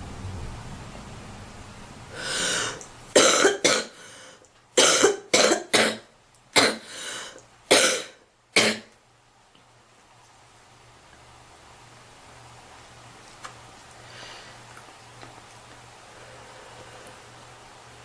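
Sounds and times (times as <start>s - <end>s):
breathing: 2.1s - 2.9s, 3.9s - 4.5s, 6.8s - 7.4s, 14.0s - 14.7s, 16.0s - 17.4s
woman coughing: 3.2s - 4.0s, 4.8s - 6.9s, 7.7s - 8.9s.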